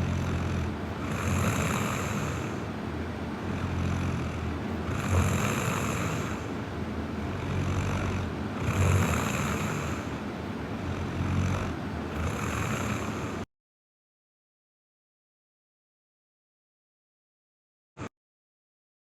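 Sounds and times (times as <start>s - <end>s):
woman snoring: 0.0s - 2.8s, 3.4s - 6.6s, 7.2s - 10.2s, 10.8s - 13.5s.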